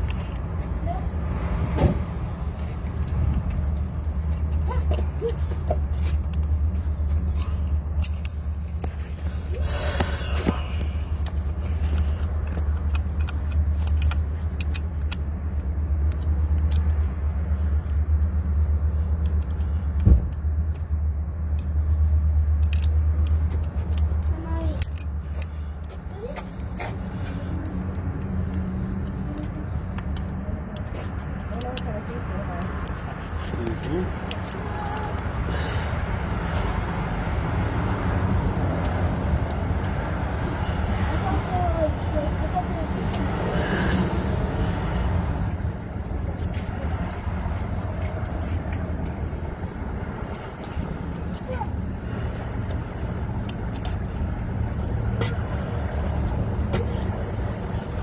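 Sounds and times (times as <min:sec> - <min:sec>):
metal tools clinking: 0:22.3 - 0:26.8.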